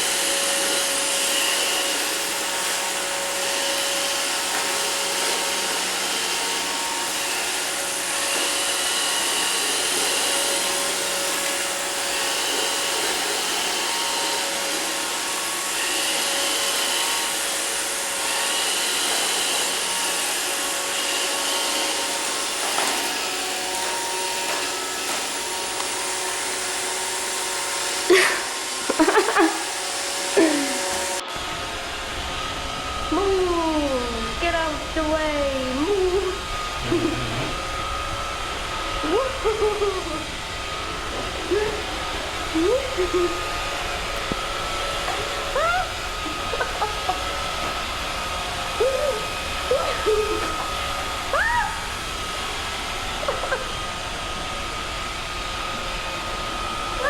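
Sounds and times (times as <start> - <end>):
robot vacuum whirring: 0.0 - 57.0
loud sliding-pitch sounds: 32.5 - 38.0.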